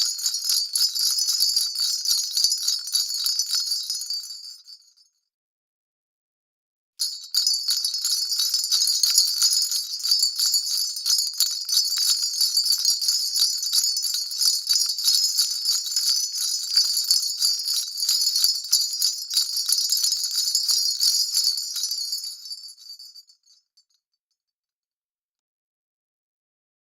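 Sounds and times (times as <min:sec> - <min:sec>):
sleigh bells jingling: 0:00.0 - 0:04.7, 0:07.0 - 0:23.4.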